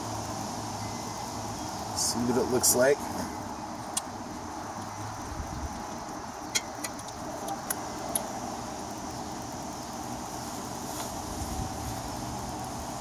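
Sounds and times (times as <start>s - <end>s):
steady background noise: 0.0s - 13.0s
light metallic clicks and clinks: 6.5s - 8.3s.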